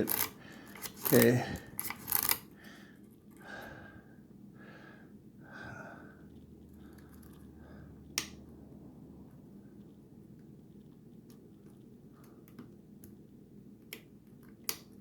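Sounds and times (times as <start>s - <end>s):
soft breathing: 0.3s - 8.2s.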